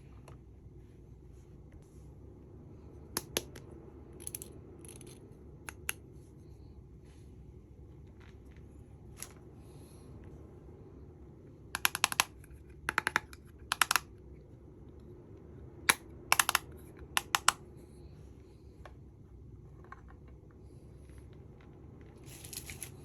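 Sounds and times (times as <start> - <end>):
hard plastic pieces clicking: 11.8 - 14.1, 15.9 - 17.6.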